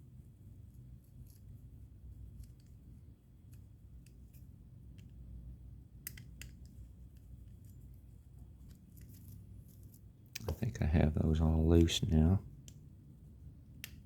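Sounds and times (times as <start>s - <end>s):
low steady hum: 0.0s - 14.0s.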